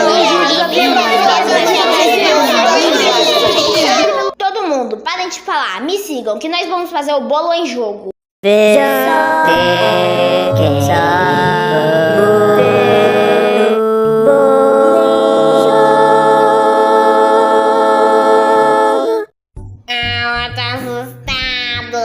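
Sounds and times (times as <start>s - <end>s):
choir singing sustained chords: 8.5s - 19.3s.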